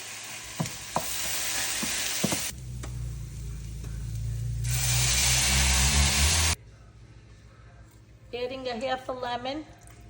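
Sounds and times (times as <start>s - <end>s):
food sizzling in hot oil: 0.0s - 2.6s, 4.2s - 6.6s
low steady hum: 2.5s - 8.8s.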